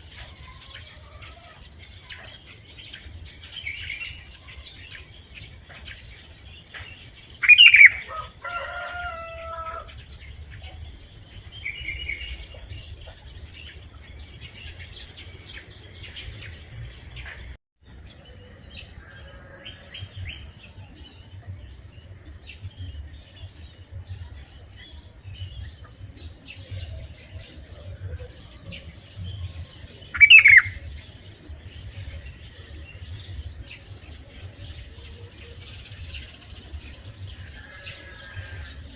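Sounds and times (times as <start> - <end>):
insect drone: 0.0 - 38.9
bird sharp calls: 7.4 - 8.1, 30.2 - 30.8.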